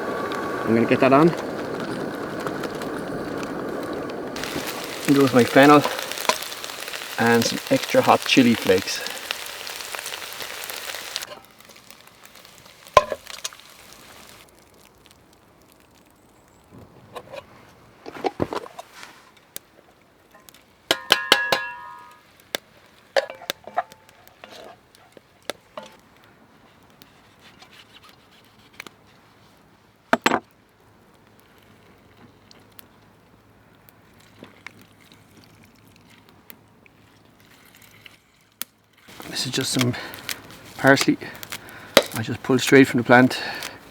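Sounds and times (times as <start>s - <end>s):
ringing metal clang: 20.9s - 22.2s
utensil tapping metal pot: 20.9s - 22.2s.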